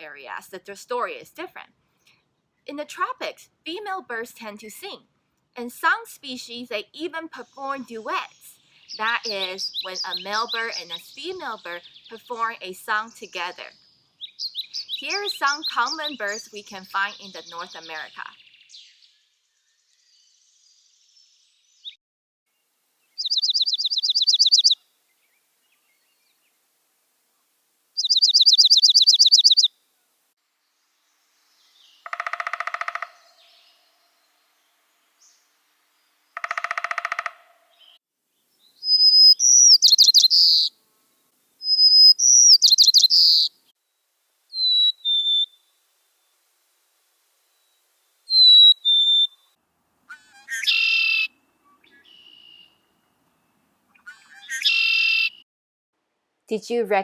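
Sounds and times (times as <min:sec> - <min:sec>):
whistled bird song: 0:13.2 - 0:22.0, 0:23.2 - 0:24.8, 0:28.0 - 0:29.7, 0:38.8 - 0:40.7, 0:41.6 - 0:43.6, 0:44.5 - 0:45.6, 0:47.6 - 0:49.4, 0:50.1 - 0:52.8, 0:54.0 - 0:55.4
bird trills: 0:23.2 - 0:24.8, 0:28.0 - 0:29.7, 0:31.6 - 0:34.3, 0:36.4 - 0:38.0, 0:38.8 - 0:40.7, 0:41.6 - 0:43.6, 0:44.5 - 0:45.7, 0:48.3 - 0:49.4, 0:50.1 - 0:52.8, 0:53.9 - 0:55.4
buzzy bird calls: 0:23.2 - 0:24.8, 0:28.0 - 0:29.7, 0:31.8 - 0:34.0, 0:36.4 - 0:38.0, 0:38.8 - 0:40.7, 0:41.6 - 0:43.6, 0:44.5 - 0:45.6, 0:48.3 - 0:49.4, 0:50.1 - 0:52.8, 0:54.0 - 0:55.4
short high bird calls: 0:23.2 - 0:24.8, 0:28.0 - 0:29.7, 0:31.7 - 0:34.3, 0:36.4 - 0:38.0, 0:38.8 - 0:40.7, 0:41.6 - 0:43.6, 0:44.5 - 0:45.6, 0:48.3 - 0:49.4, 0:50.1 - 0:52.8, 0:53.9 - 0:55.4.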